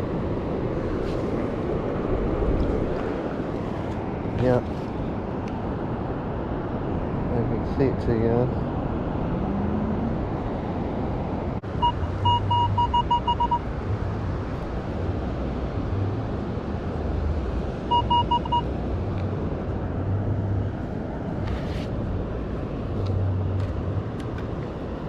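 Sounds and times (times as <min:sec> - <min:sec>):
steady rushing background noise: 0:00.0 - 0:25.0
metal detector beeping: 0:11.8 - 0:13.6, 0:17.9 - 0:18.7.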